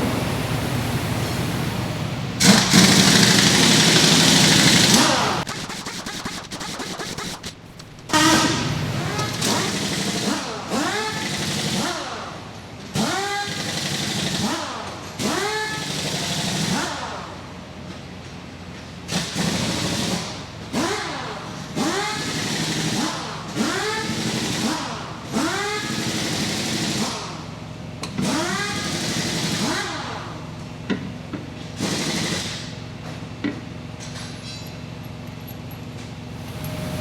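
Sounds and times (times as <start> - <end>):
pneumatic impact wrench bursts: 2.4 - 17.2, 19.1 - 30.4, 31.5 - 33.0.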